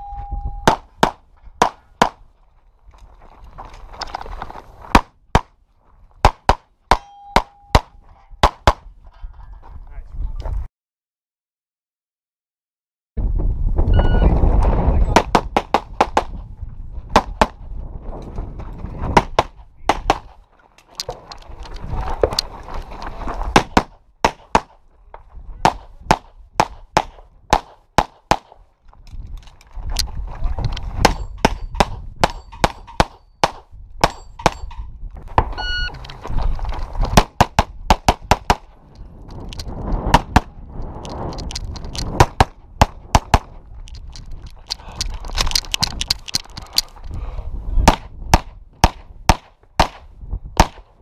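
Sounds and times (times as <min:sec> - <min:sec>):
short ringing tone: 0:00.0 - 0:00.7, 0:07.0 - 0:08.0, 0:13.9 - 0:14.3, 0:35.6 - 0:36.0
handgun shots: 0:50.6 - 0:50.9.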